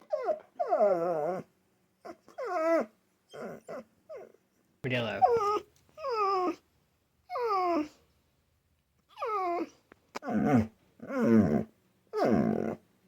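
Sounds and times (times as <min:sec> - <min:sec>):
dog vocalizing word-like calls: 0:05.0 - 0:05.6.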